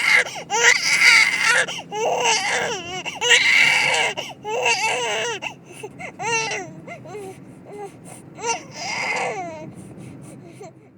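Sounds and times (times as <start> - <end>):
baby crying: 0.0 - 9.7.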